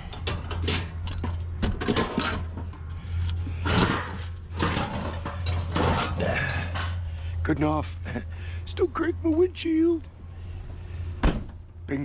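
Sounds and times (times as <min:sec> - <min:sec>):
scrap steel scraping and knocking: 0:00.0 - 0:07.1
steady low hum: 0:00.0 - 0:12.0.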